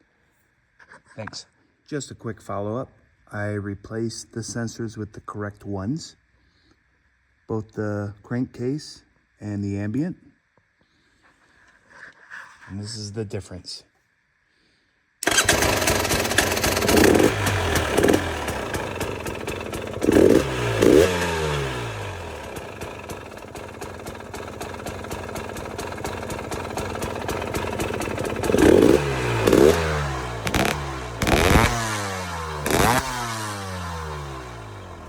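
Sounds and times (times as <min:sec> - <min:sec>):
two-stroke motorcycle engine revving: 0:15.2 - 0:35.0.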